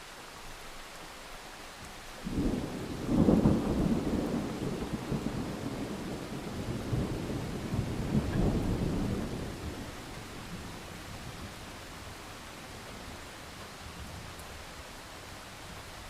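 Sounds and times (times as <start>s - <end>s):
steady rain: 0.0s - 16.0s
thunder rumbling: 2.2s - 12.1s.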